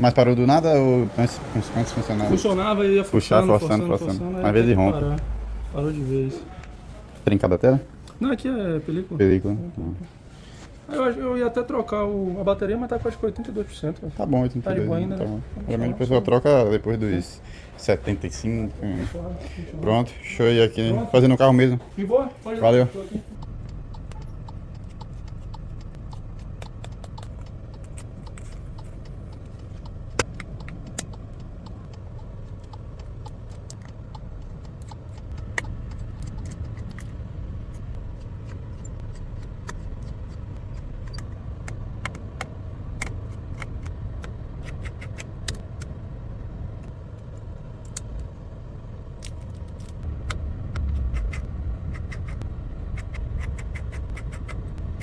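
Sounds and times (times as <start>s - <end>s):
steady low rumble: 0.0s - 10.4s, 11.6s - 55.0s
hand tools clicking and scraping: 22.8s - 46.0s, 49.2s - 55.0s.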